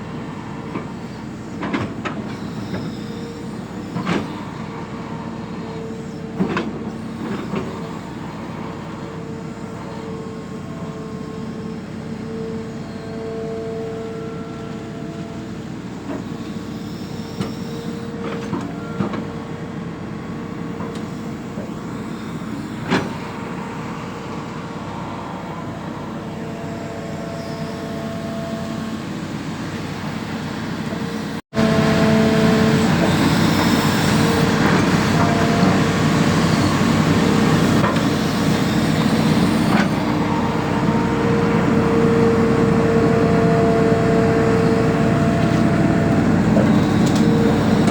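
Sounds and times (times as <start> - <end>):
excavator engine and hydraulics: 0.0 - 47.9
whining tones: 20.8 - 47.9.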